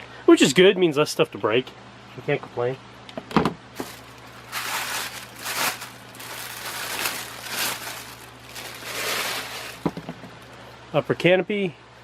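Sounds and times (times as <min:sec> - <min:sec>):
packaging rustling and crinkling: 0:03.8 - 0:10.1.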